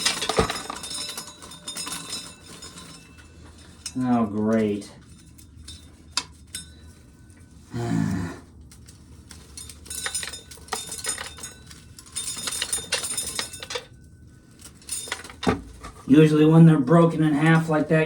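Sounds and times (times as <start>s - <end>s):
corn kernels rattling into container: 0.0s - 2.2s
brief low vocal sound: 7.7s - 8.5s.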